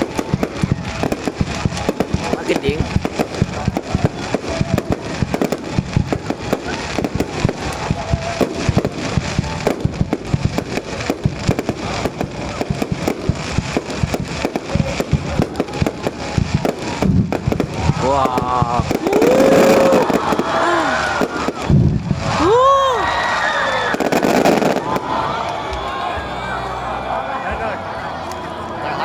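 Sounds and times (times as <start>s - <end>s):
fireworks bangs and crackling: 0.0s - 26.2s.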